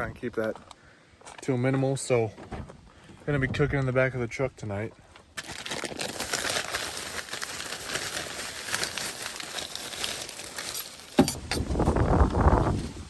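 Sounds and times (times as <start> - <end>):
packaging crinkling: 5.3 - 11.3.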